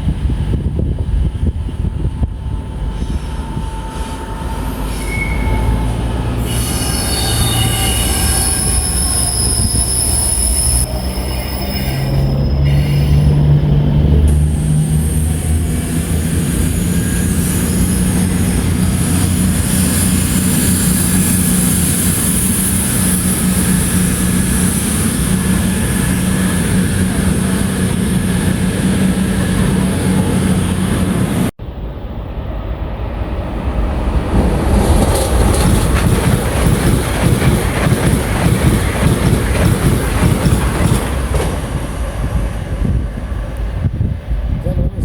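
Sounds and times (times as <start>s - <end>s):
train rumbling: 0.0s - 45.0s
high rushing hiss: 16.2s - 30.8s.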